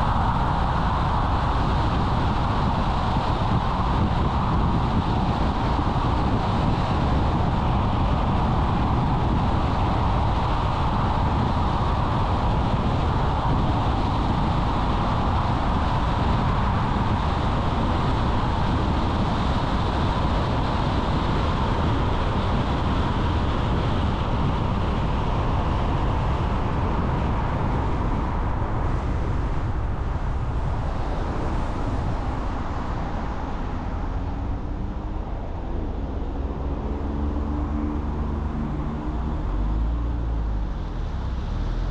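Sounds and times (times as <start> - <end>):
car engine hum: 20.6 - 41.9.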